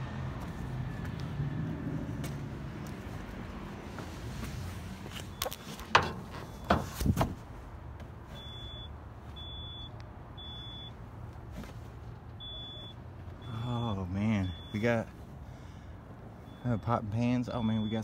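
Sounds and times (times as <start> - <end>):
high electronic warning beep: 8.4 - 11.0, 12.4 - 15.0, 16.4 - 18.0.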